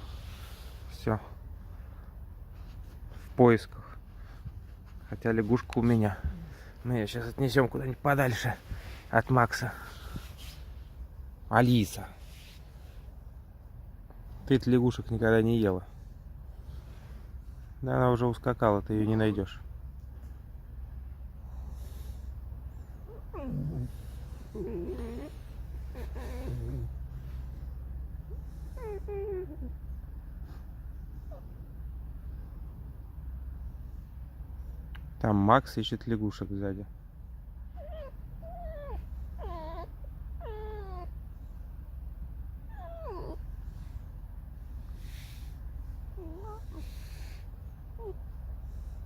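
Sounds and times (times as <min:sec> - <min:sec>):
fox whining calls: 0:23.0 - 0:27.2, 0:28.2 - 0:29.8, 0:37.8 - 0:41.2, 0:42.7 - 0:43.5, 0:45.0 - 0:48.3.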